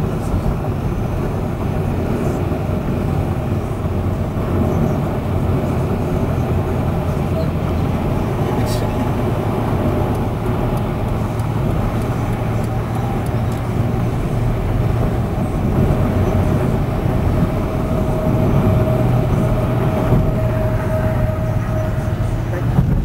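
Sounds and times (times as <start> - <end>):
thin steady whine: 0.0 - 23.0
vehicle rumble from inside: 0.0 - 23.0.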